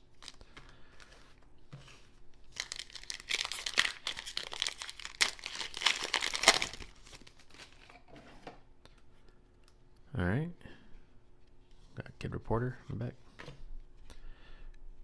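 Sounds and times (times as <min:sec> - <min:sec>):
foil wrapper crinkling: 0:00.0 - 0:00.5, 0:02.4 - 0:07.9.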